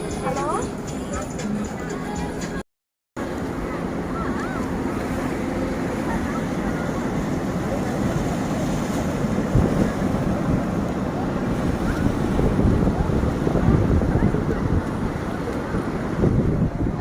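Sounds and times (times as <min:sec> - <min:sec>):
wind buffeting microphone: 0:04.1 - 0:17.0.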